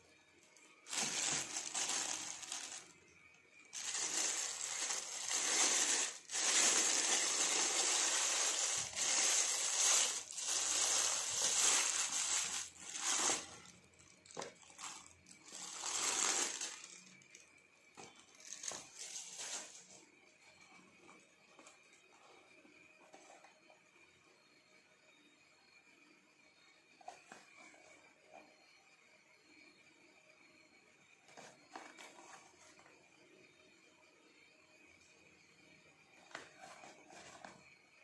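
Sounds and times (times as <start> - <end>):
packaging rustling and scraping: 0.9 - 3.0, 3.7 - 17.4, 18.0 - 20.0, 31.3 - 32.8, 36.3 - 37.6.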